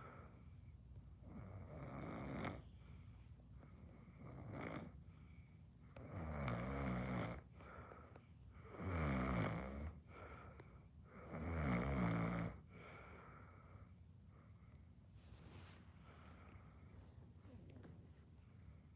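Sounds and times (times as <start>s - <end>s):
quiet breathing: 0.0s - 6.2s, 7.3s - 8.9s, 9.8s - 11.5s, 12.5s - 18.9s
person snoring: 8.7s - 10.0s.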